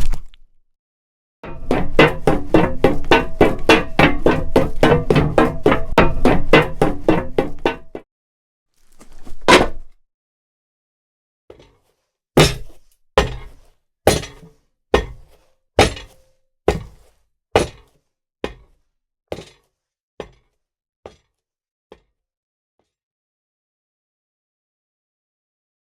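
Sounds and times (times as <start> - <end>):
footsteps on hard floor: 1.5 - 8.0, 12.4 - 18.7.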